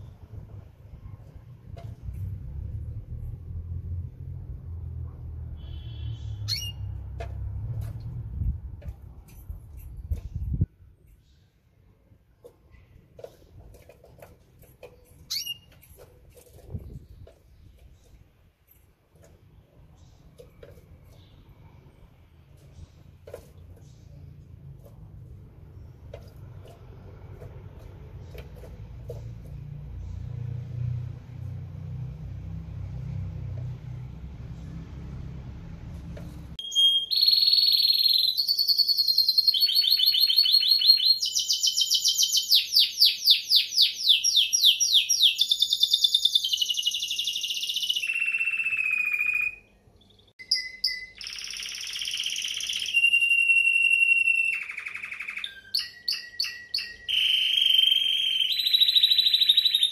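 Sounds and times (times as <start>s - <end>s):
canary singing trills: 5.5s - 7.1s, 13.8s - 18.2s, 36.6s - 59.9s.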